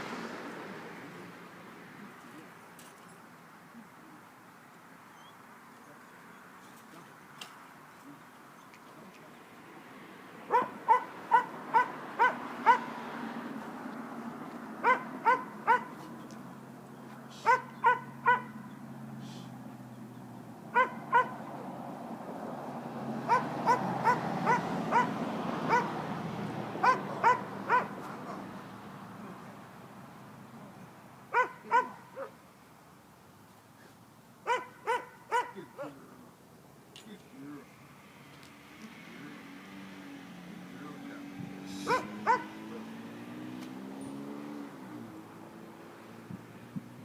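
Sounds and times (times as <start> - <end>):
small dog yapping: 10.5 - 12.9, 14.8 - 16.1, 17.4 - 18.7, 20.8 - 21.4, 23.3 - 25.1, 25.7 - 25.9, 26.8 - 28.5, 31.3 - 32.4, 34.5 - 36.0, 41.8 - 42.8.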